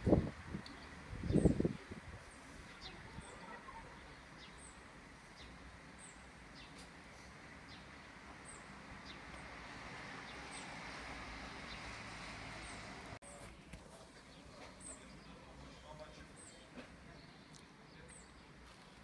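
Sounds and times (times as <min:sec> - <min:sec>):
small birds chirping: 0:00.6 - 0:09.6, 0:14.0 - 0:19.0.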